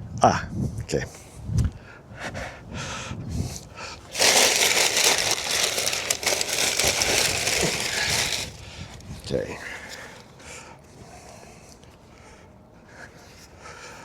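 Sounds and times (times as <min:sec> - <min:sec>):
packaging rustling and crinkling: 0:04.1 - 0:08.7.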